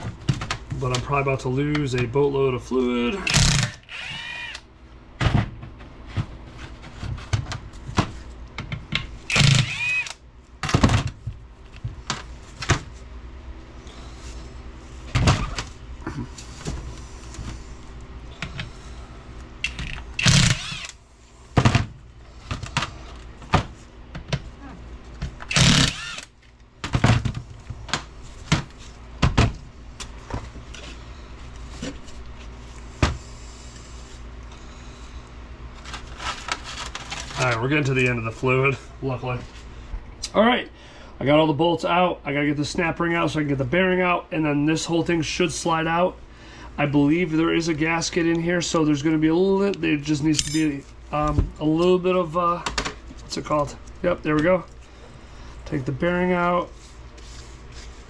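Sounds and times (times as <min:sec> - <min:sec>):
steady low hum: 0:00.0 - 0:58.0
hand tools clinking and knocking: 0:50.3 - 0:50.8.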